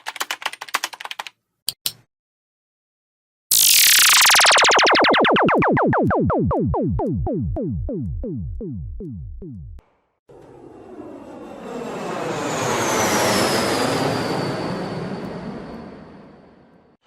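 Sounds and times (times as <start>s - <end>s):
high whine falling in pitch: 3.5s - 9.8s
synthesized falling pew sweeps: 3.5s - 9.8s
aircraft flying by: 10.3s - 17.0s.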